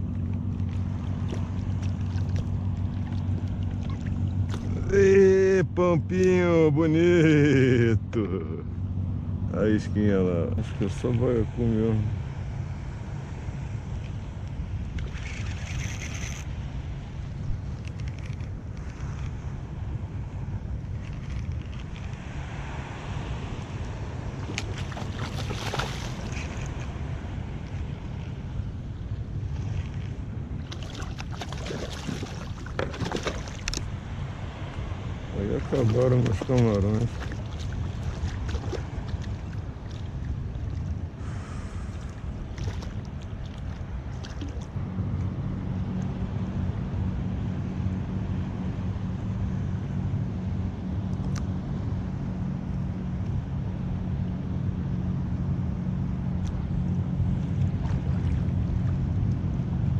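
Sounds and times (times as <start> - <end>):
water lapping at kayak: 0.0 - 50.2, 52.0 - 59.9
low motor hum: 0.0 - 59.9
wind buffeting microphone: 8.9 - 46.2.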